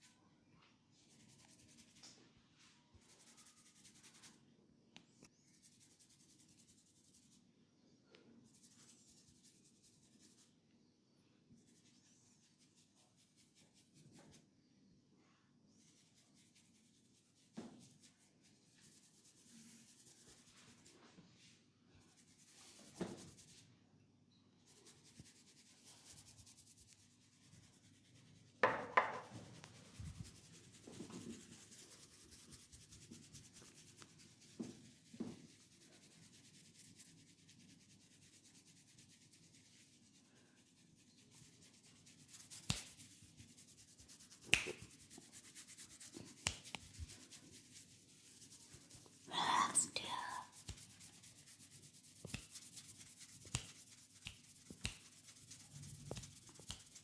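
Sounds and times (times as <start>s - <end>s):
hands rubbing skin: 24.7s - 57.0s.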